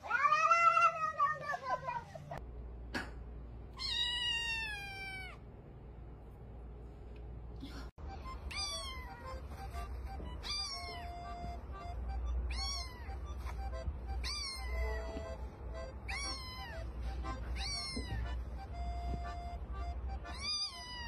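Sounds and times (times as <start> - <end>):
cat meowing: 3.8 - 5.4, 8.5 - 9.3, 10.3 - 11.2, 12.5 - 13.3, 14.2 - 15.2, 16.0 - 18.4, 20.3 - 21.0.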